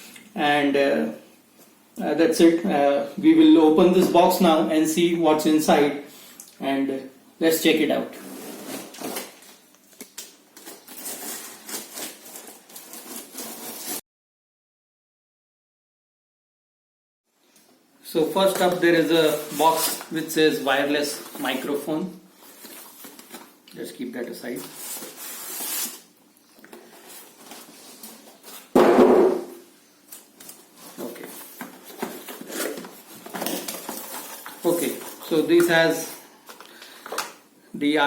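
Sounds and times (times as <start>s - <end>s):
cardboard rustling and scraping: 8.2s - 9.6s, 10.6s - 14.0s, 24.4s - 26.1s, 30.4s - 35.8s.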